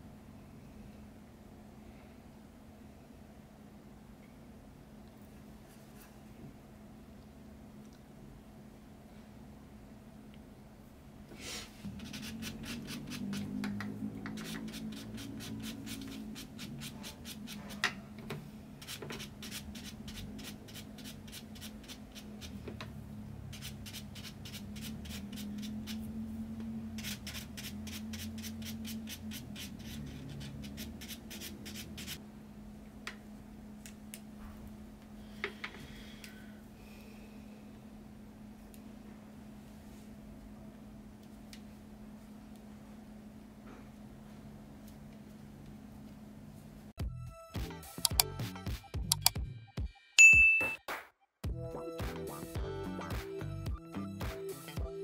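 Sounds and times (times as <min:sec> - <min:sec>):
sharp click: 0:48.0 - 0:48.3, 0:49.1 - 0:49.4.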